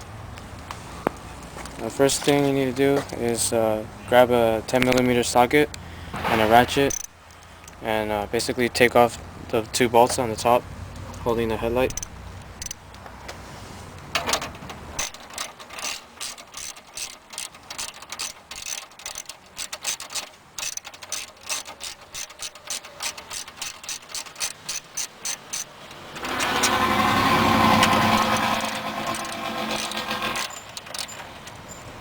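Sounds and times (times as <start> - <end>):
hand ratchet clicking: 6.9 - 7.8, 11.9 - 13.0, 15.0 - 31.2.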